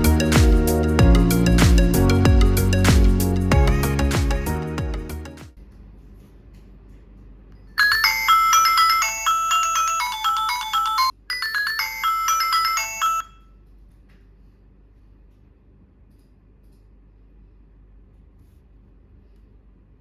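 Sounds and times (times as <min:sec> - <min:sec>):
electronic alarm melody: 0:00.0 - 0:05.3, 0:07.8 - 0:13.4.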